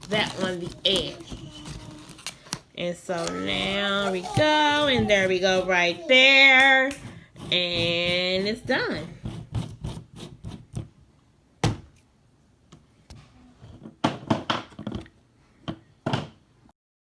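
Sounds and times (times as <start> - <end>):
handling taps and knocks: 0.0 - 5.9.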